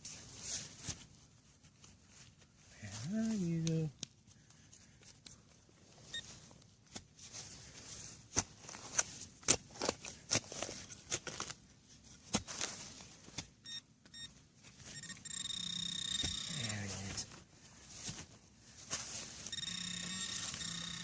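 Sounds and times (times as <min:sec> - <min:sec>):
metal detector beeps: 0:13.6 - 0:17.2, 0:19.4 - 0:21.0.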